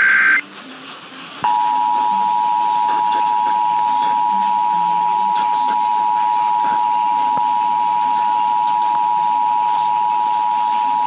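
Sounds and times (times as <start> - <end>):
two-tone alert beep: 0.0 - 0.4.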